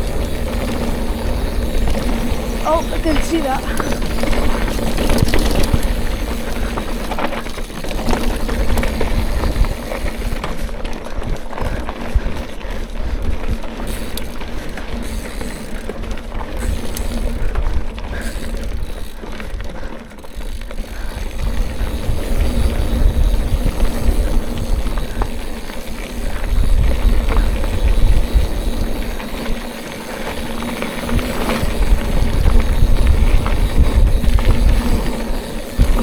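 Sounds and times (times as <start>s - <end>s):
bike chain and frame rattling: 0.0s - 36.0s
wind rumble on microphone: 20.9s - 25.4s, 26.1s - 29.2s, 31.0s - 36.0s.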